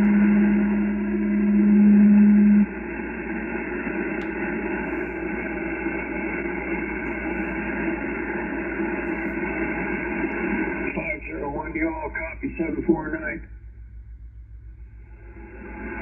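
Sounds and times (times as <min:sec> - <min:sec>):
steady low radio tone: 0:00.0 - 0:16.0
radio static hiss: 0:02.7 - 0:13.5.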